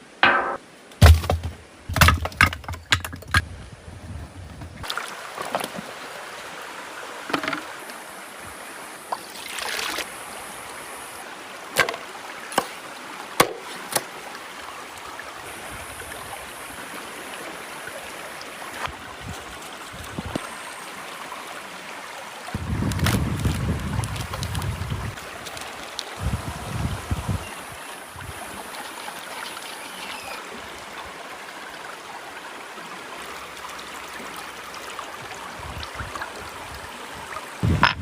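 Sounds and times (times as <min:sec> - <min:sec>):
river water rushing: 0:04.8 - 0:19.9.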